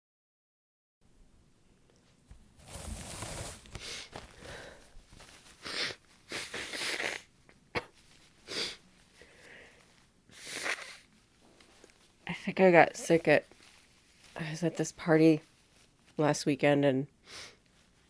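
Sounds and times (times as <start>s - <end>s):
woman sniffling: 5.6s - 11.1s, 17.2s - 17.6s.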